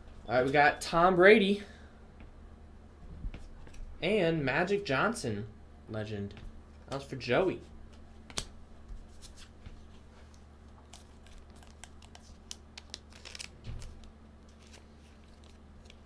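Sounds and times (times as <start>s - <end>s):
low steady hum: 0.0s - 16.0s
cards clicking and rustling: 7.9s - 16.0s.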